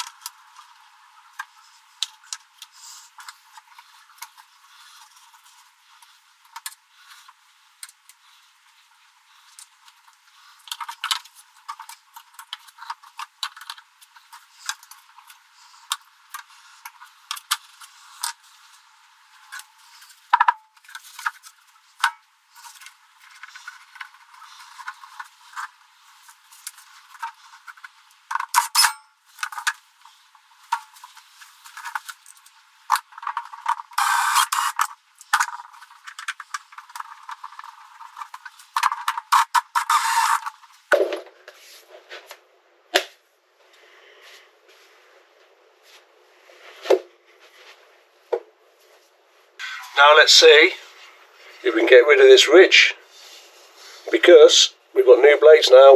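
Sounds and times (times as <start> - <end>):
metal scraping: 17.8 - 40.9
metallic clinks and rattles of tools: 28.4 - 29.8.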